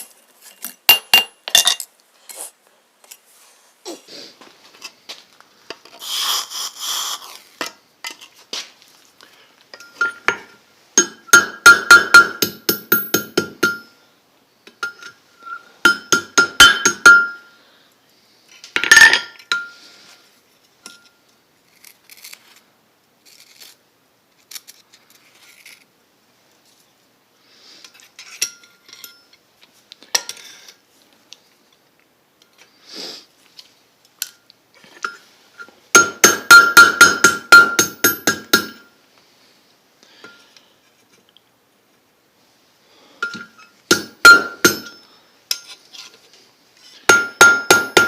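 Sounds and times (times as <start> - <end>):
hammer striking steel on anvil: 9.8 - 14.0, 14.8 - 17.5, 36.0 - 38.9, 43.2 - 45.7, 47.1 - 48.0.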